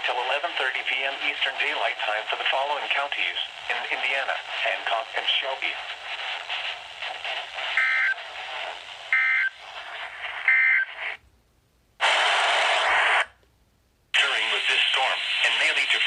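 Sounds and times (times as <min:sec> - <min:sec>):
radio static hiss: 0:00.0 - 0:11.2, 0:12.0 - 0:13.4, 0:14.2 - 0:16.0.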